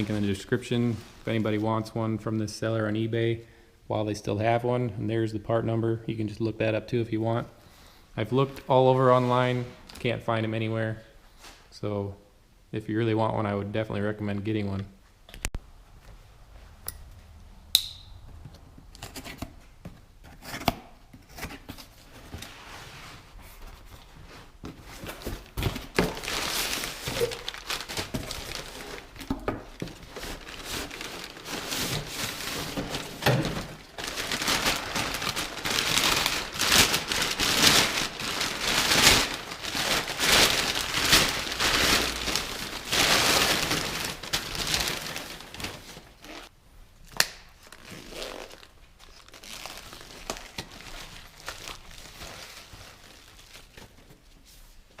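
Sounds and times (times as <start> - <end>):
wrapping crinkling and tearing: 25.2 - 46.5, 47.5 - 54.2.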